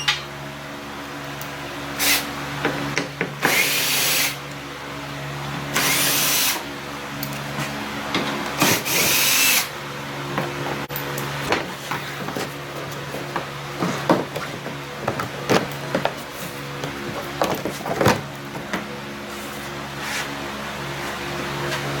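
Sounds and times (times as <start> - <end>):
electric drill whining: 3.4 - 4.5, 5.7 - 6.7, 8.6 - 10.1.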